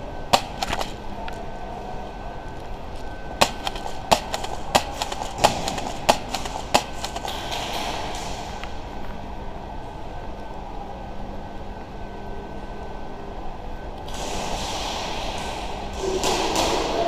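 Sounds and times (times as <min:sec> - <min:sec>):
steady background hum: 0:00.0 - 0:17.0
airsoft gun shots: 0:03.4 - 0:08.5.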